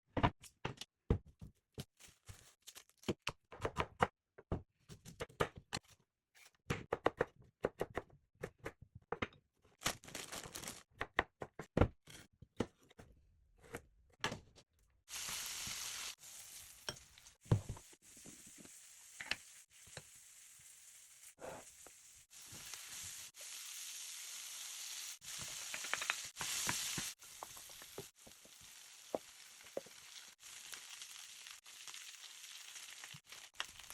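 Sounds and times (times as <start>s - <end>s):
food sizzling in frying pan: 15.1s - 33.9s
kitchen knocks and clatter: 25.4s - 28.1s.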